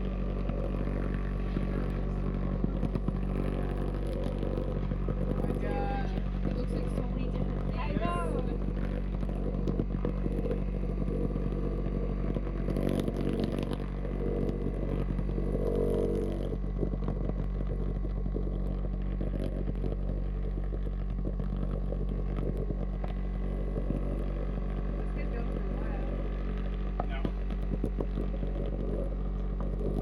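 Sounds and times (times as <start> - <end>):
oobleck clicking on speaker: 0.0 - 30.0
subwoofer low tone hum: 0.0 - 30.0.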